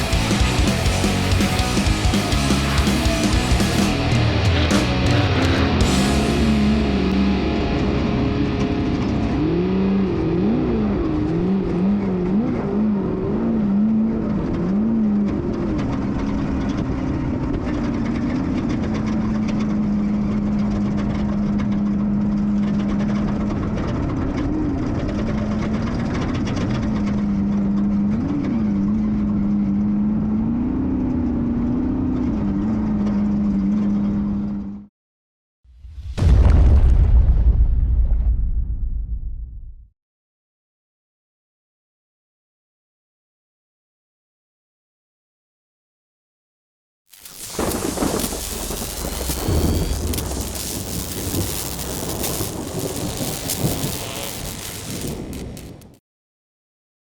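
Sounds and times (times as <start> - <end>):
race vehicle engine revving: 0.0 - 16.6.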